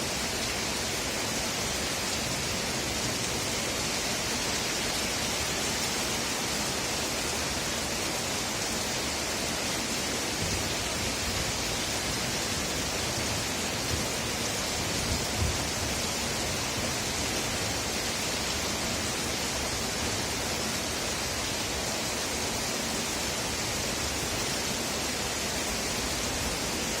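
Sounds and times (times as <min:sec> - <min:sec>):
heavy rainfall: 0:00.0 - 0:27.0.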